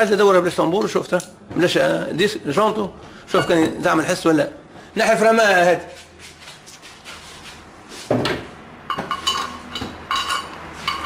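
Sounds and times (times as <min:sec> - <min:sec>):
metal tools clinking: 0:03.3 - 0:03.8, 0:08.9 - 0:11.0.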